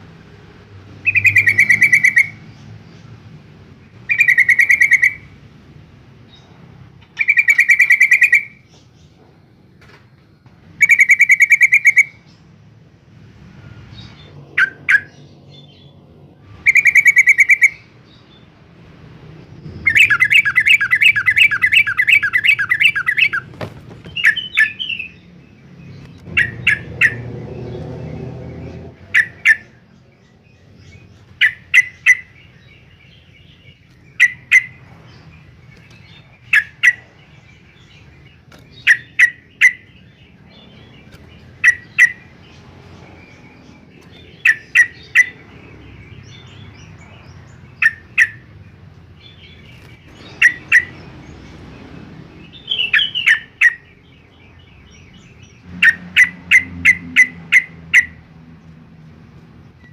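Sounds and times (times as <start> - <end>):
bulbul calling: 1.0 - 2.7, 4.0 - 5.4, 6.4 - 8.9, 10.8 - 12.4, 14.1 - 15.8, 16.6 - 18.2, 19.6 - 25.3, 25.9 - 27.3, 28.9 - 29.9, 30.8 - 51.4, 52.4 - 58.4.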